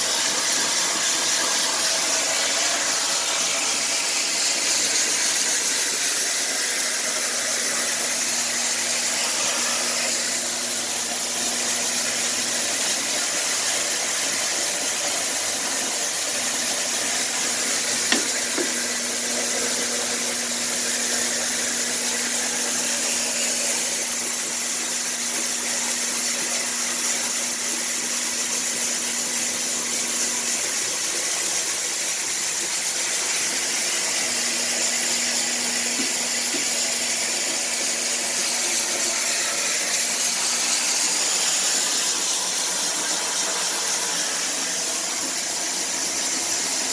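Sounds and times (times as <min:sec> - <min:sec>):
air blowing hiss: 0:00.0 - 0:30.8
motor hum: 0:00.0 - 0:46.9.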